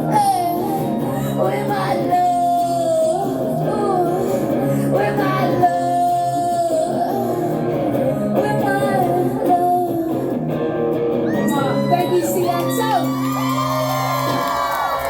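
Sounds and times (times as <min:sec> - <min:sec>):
person singing long notes: 0:00.0 - 0:10.5
guitar accompaniment: 0:00.0 - 0:15.0.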